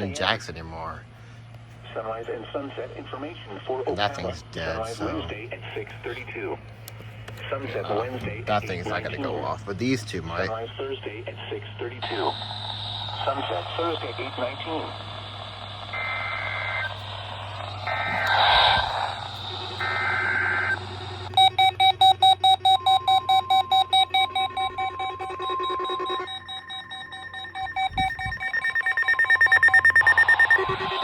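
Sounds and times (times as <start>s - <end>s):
steady warning alarm tone: 7.7s - 11.2s, 12.0s - 31.0s
digital header warble: 12.0s - 31.0s
rapid electronic beeps: 12.0s - 31.0s.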